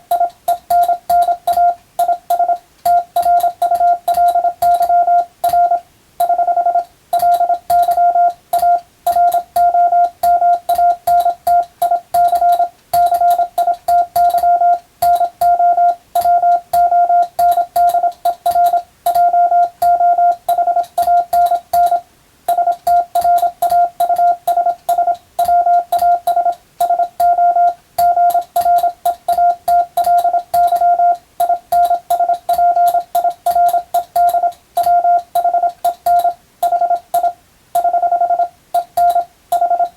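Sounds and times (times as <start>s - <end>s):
morse code beeps: 0.0s - 39.9s
telegraph key clicks: 6.2s - 37.9s.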